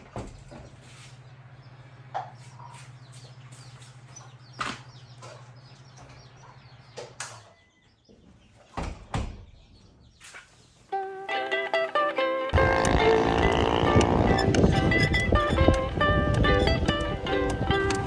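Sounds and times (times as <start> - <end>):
steady low hum: 12.6 - 18.0.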